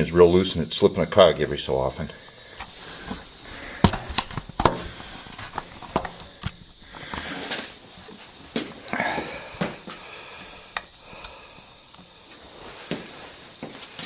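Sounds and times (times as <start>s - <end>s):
short hiss: 2.5s - 7.9s.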